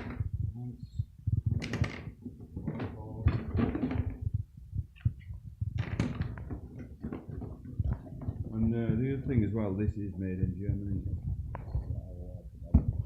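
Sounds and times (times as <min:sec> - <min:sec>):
knocks and thuds of handling: 0:00.0 - 0:00.4, 0:01.3 - 0:09.4, 0:12.7 - 0:13.0.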